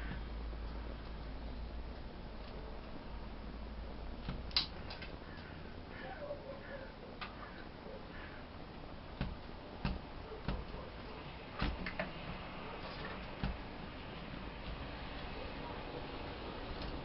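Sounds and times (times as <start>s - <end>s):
steady background hiss: 0.0s - 17.0s
light taps and knocks: 9.2s - 11.0s.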